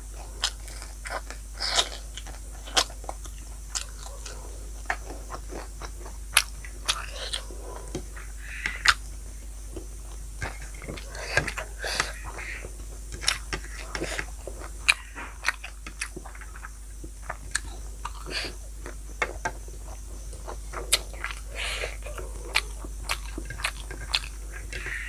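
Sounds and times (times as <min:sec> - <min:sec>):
person chewing crunchy food: 0:00.0 - 0:25.0.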